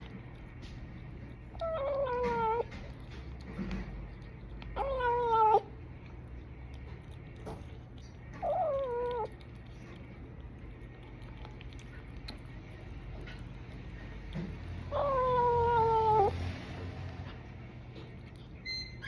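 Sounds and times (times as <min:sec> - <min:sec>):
kitten meowing: 0:01.6 - 0:02.7, 0:04.8 - 0:05.7, 0:08.4 - 0:09.3, 0:14.9 - 0:16.3.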